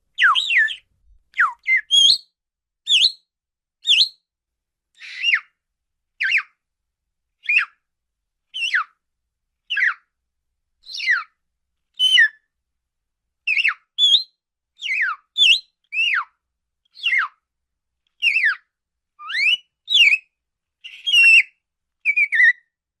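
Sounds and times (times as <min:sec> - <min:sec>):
parakeet whistled calls: 0:00.2 - 0:00.8, 0:01.4 - 0:02.3, 0:02.9 - 0:03.2, 0:03.8 - 0:04.2, 0:05.0 - 0:05.5, 0:06.2 - 0:06.5, 0:07.4 - 0:07.8, 0:08.6 - 0:08.9, 0:09.7 - 0:10.0, 0:10.9 - 0:11.3, 0:12.0 - 0:12.4, 0:13.5 - 0:16.3, 0:17.0 - 0:17.4, 0:18.2 - 0:22.7.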